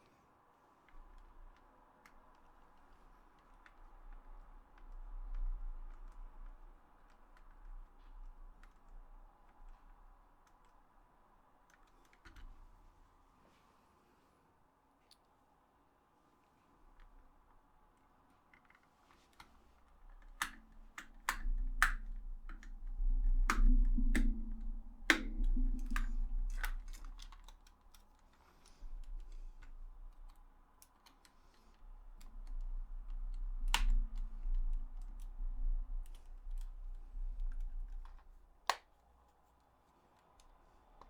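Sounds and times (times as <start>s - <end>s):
plastic controller clicks and knocks: 18.5s - 28.4s
low rumble: 20.3s - 27.5s, 32.0s - 38.4s.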